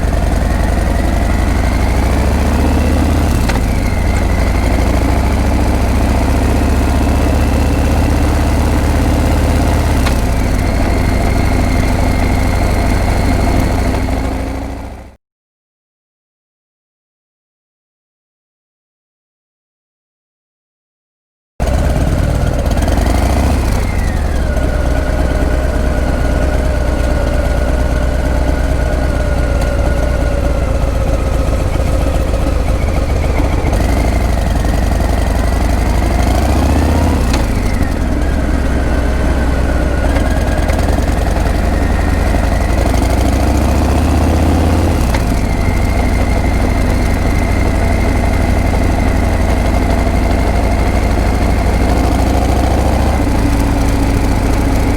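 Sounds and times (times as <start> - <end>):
motorcycle engine revving: 0.0 - 15.2, 21.6 - 54.9.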